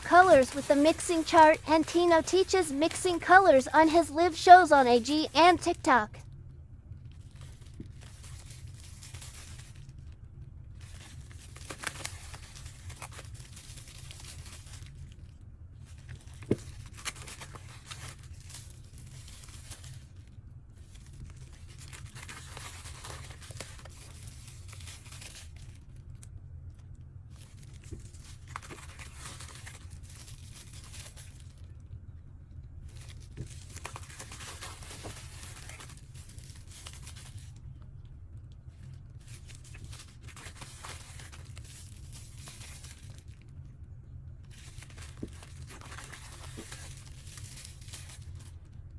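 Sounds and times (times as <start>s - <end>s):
packaging tearing and crinkling: 10.8s - 15.2s, 16.0s - 20.3s, 20.9s - 25.8s, 27.4s - 31.6s, 32.9s - 37.6s, 39.3s - 43.3s, 44.5s - 48.5s.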